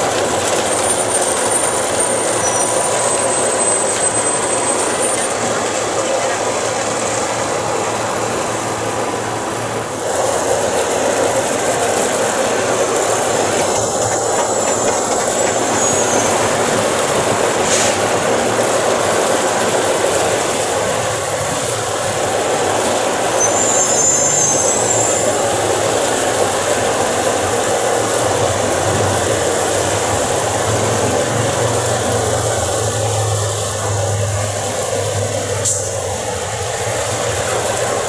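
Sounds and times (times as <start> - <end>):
train wheel squeals: 0.0 - 8.7, 11.2 - 20.4, 22.4 - 34.0
train rumbling on elevated tracks: 0.0 - 38.0.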